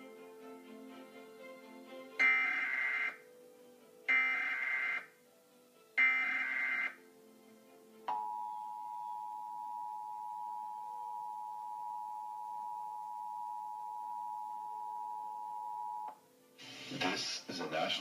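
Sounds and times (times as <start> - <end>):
emergency alert two-tone signal: 2.2 - 3.2, 4.1 - 5.1, 6.0 - 7.0.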